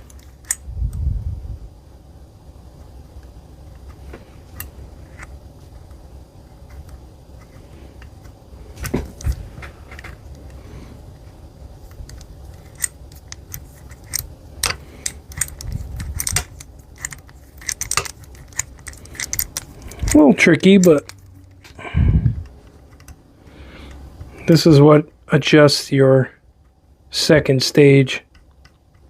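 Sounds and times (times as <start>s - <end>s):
small metal parts clicking: 11.9s - 21.7s.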